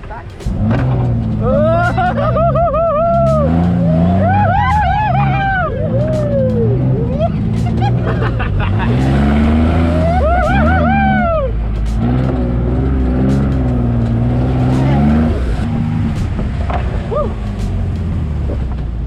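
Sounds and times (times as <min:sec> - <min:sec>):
off-road vehicle engine: 0:00.0 - 0:19.0
person crying out: 0:01.4 - 0:08.0, 0:10.0 - 0:11.6
person yelling: 0:01.4 - 0:08.0, 0:10.0 - 0:11.6.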